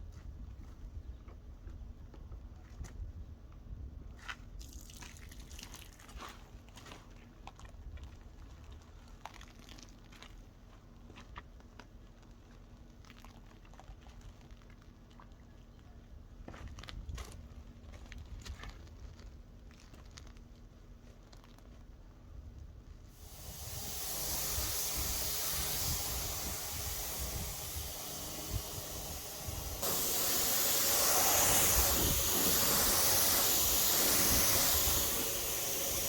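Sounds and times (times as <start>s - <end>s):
crinkling and rustling: 16.6s - 22.0s.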